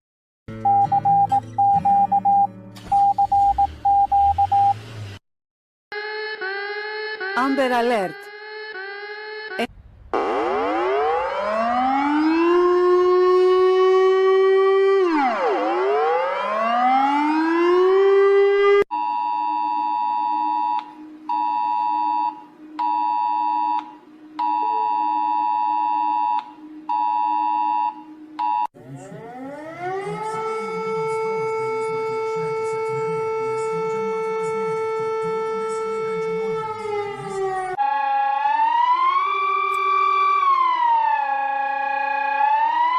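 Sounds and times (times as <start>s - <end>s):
emergency alert attention tone: 6.0s - 14.2s, 19.1s - 41.2s
civil defense siren: 6.0s - 18.9s, 22.1s - 42.9s.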